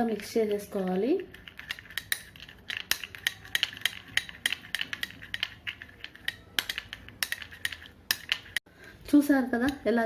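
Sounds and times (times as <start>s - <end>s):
spoon clinking against bowl: 1.3s - 8.6s.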